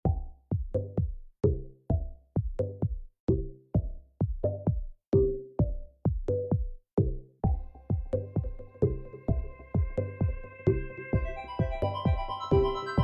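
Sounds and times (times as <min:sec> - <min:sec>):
electronic music with drum machine: 0:00.0 - 0:13.0.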